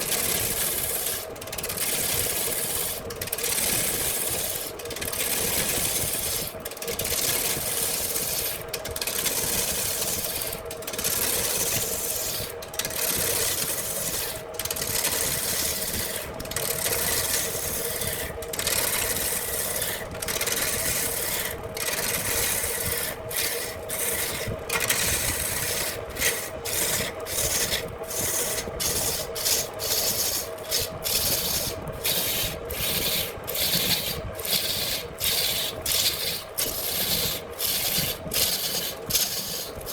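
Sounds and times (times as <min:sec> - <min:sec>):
tool scraping spinning wood: 0:00.0 - 0:39.9
wood lathe humming: 0:13.0 - 0:39.9.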